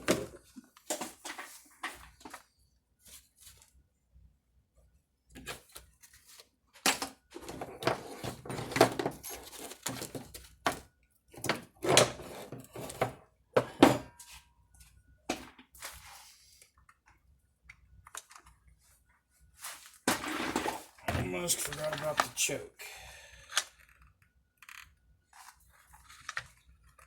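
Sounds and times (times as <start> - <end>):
tools and parts clicking and rattling: 6.8 - 14.3.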